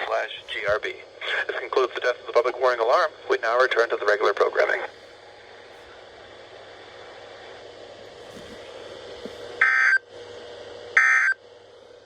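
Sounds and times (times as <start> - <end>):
radio hiss: 0.0 - 5.1.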